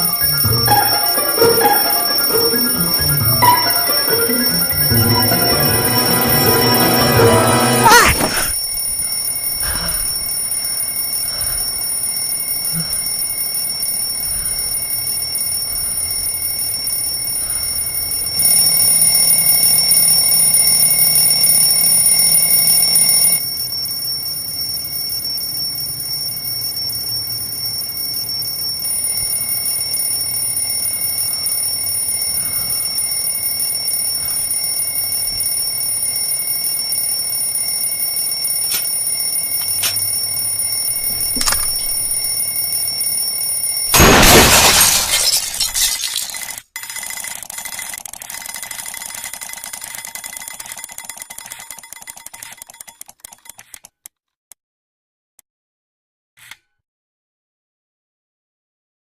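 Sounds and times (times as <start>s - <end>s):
high-pitched alarm ringing: 0.0s - 44.0s.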